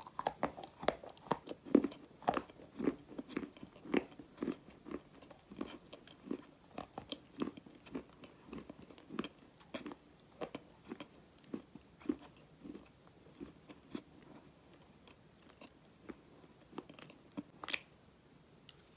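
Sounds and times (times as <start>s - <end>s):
chewing dry clay crunches: 0.0s - 17.9s.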